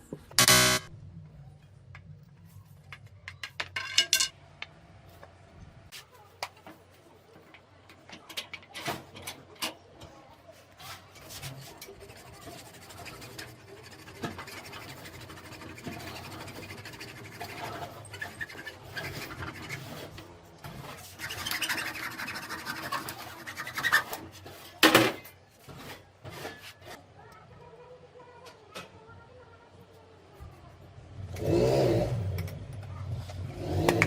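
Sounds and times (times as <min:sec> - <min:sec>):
scraping and rubbing: 0:10.6 - 0:24.8, 0:25.5 - 0:27.0.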